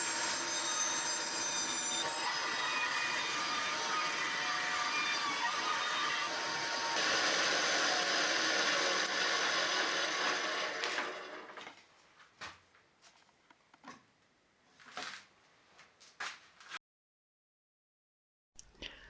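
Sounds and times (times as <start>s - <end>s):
bandsaw cutting wood: 0.0s - 11.6s.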